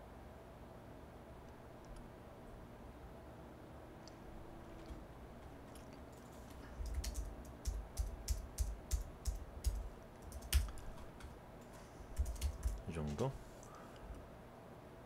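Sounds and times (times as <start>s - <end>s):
keyboard typing: 5.7s - 13.3s.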